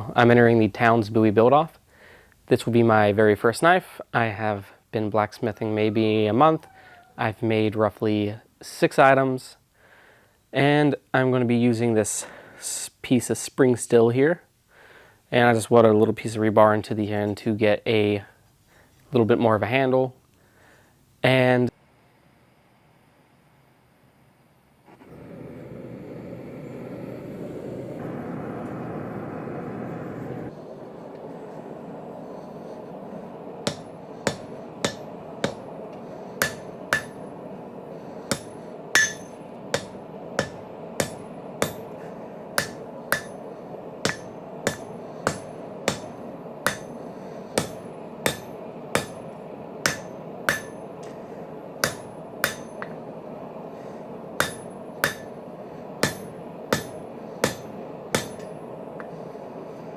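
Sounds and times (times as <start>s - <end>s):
steady rushing noise: 30.5s - 59.9s
hammer ringing on anvil: 33.6s - 35.8s, 36.4s - 37.4s, 38.3s - 51.2s, 51.8s - 53.0s, 54.4s - 55.4s, 56.0s - 58.8s.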